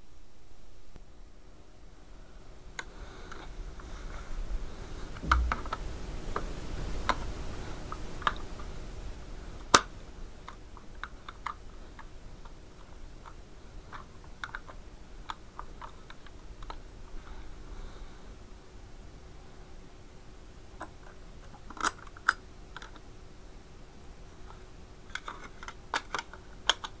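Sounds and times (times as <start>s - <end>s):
small clicks and taps: 9.7s - 16.8s, 20.8s - 23.1s, 24.5s - 27.0s.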